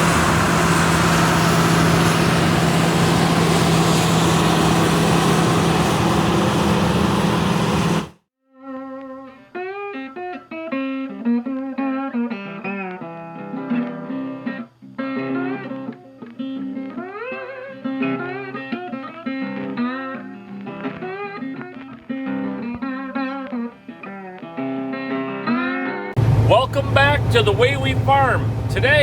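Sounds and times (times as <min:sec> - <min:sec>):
guitar-led background music: 0:08.7 - 0:26.1.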